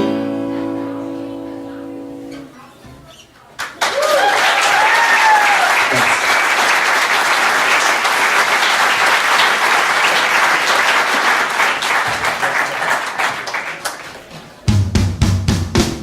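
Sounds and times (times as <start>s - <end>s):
small audience applauding: 3.5s - 14.6s.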